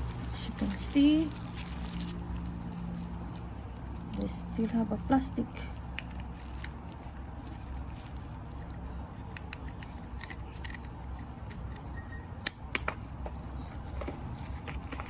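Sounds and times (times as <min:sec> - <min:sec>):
plastic packaging clicks and crinkles: 0:00.0 - 0:04.1, 0:05.9 - 0:11.8, 0:13.8 - 0:15.0.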